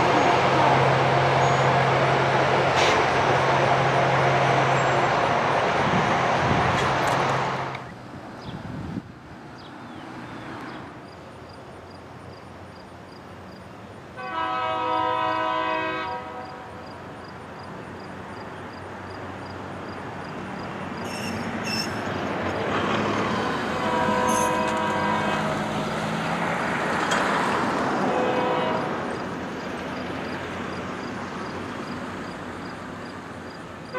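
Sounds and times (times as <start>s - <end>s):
train rumble: 0.0s - 33.9s
locomotive air horn blasts: 14.2s - 17.0s, 23.3s - 25.6s, 28.1s - 29.1s.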